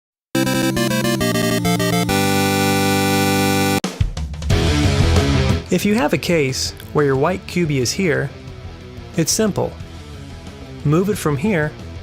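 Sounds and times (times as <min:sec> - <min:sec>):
fast bright pitched notes: 0:00.4 - 0:03.8.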